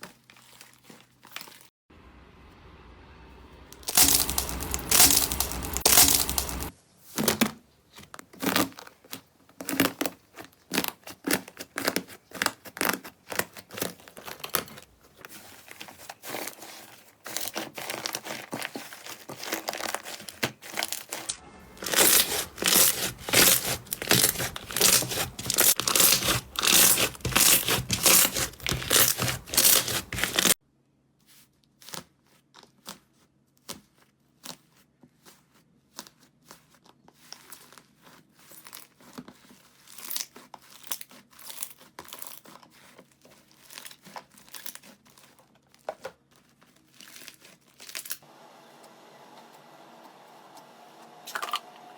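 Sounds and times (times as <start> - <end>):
slime crackling and popping: 3.8 - 6.7, 9.6 - 14.8, 17.3 - 30.6.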